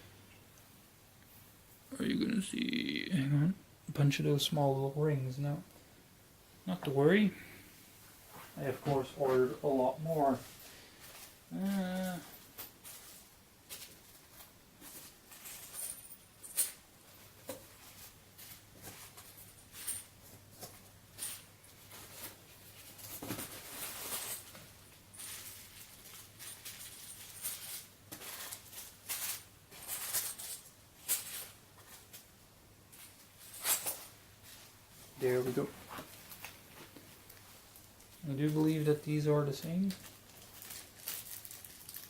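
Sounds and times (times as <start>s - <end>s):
faint steady hum: 0.0s - 42.0s
metal grommets clicking and rustling: 8.2s - 42.0s.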